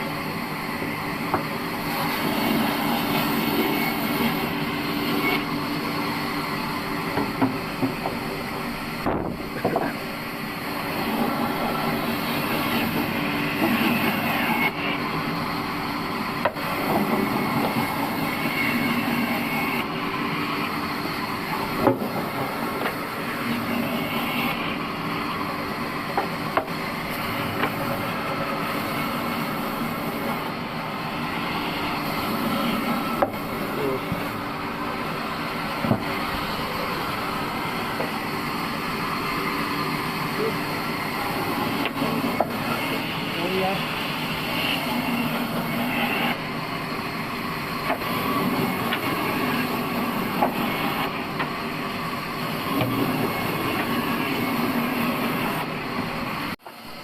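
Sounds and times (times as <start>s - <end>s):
band sawmill humming: 0.0s - 57.0s
sharp knocks: 9.0s - 10.0s.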